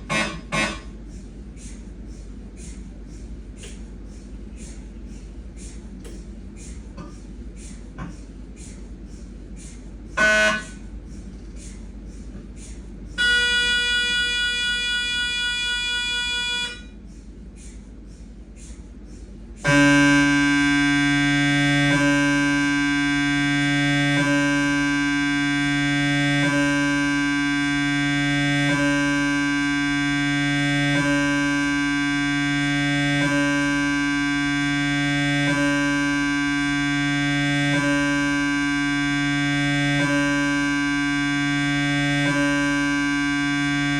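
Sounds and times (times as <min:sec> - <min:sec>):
steady buzzing tone: 0:00.0 - 0:01.2, 0:10.1 - 0:11.2, 0:13.1 - 0:17.1, 0:19.5 - 0:43.9
loud droning tone: 0:00.0 - 0:01.7, 0:09.9 - 0:11.6, 0:13.1 - 0:17.1, 0:19.5 - 0:43.9.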